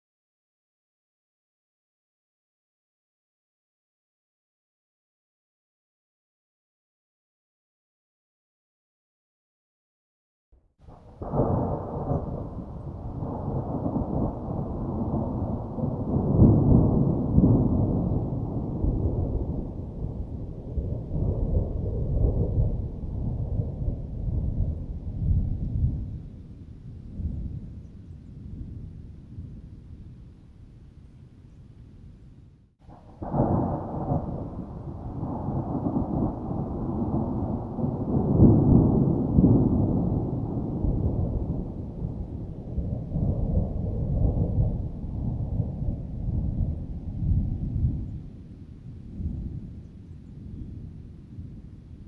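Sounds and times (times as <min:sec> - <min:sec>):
thunder rumbling: 0:10.8 - 0:52.0.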